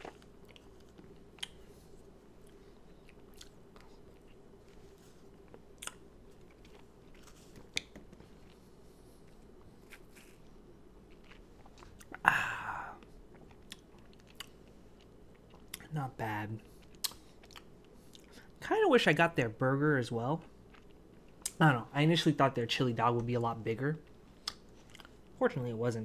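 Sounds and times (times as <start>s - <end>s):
person chewing: 0.0s - 15.9s, 16.6s - 18.5s, 20.4s - 21.6s, 24.0s - 25.4s
small mouth clicks: 1.4s - 1.6s, 17.0s - 18.3s, 24.4s - 25.1s.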